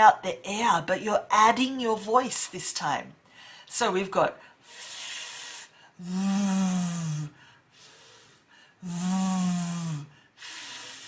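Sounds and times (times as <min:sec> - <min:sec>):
woman hissing f sound: 0:04.6 - 0:11.0.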